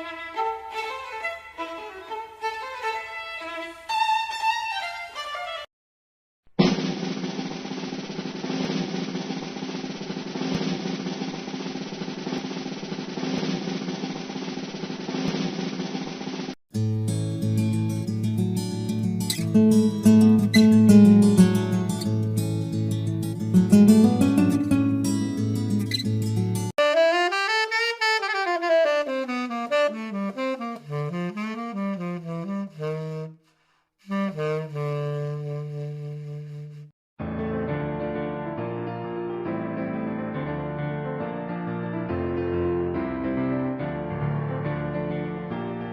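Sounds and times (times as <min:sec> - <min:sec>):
wind instrument melody: 0:00.0 - 0:05.7, 0:26.8 - 0:36.9
drum roll: 0:06.6 - 0:16.6, 0:19.0 - 0:26.7
acoustic guitar strum: 0:16.8 - 0:26.7.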